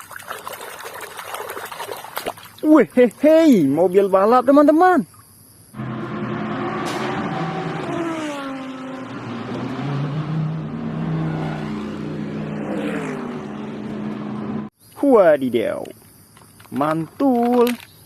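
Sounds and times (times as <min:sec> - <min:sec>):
race car engines running: 0:05.8 - 0:14.7
race car passing by: 0:05.8 - 0:14.7.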